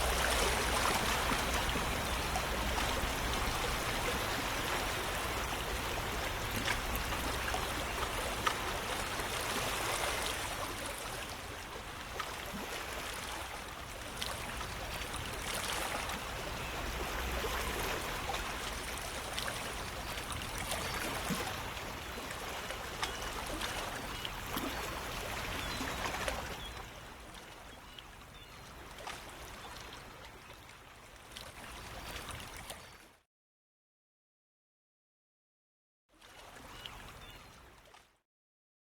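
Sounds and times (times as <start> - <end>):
flowing water rushing: 0.0 - 21.9.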